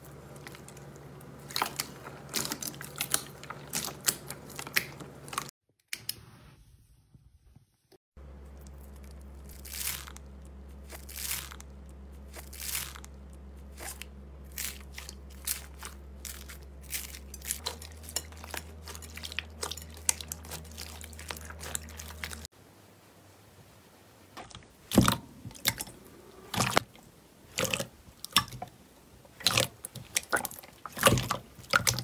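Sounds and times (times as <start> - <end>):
low hum: 8.2 - 23.3
slime crackling and squishing: 8.4 - 22.5, 29.3 - 32.0.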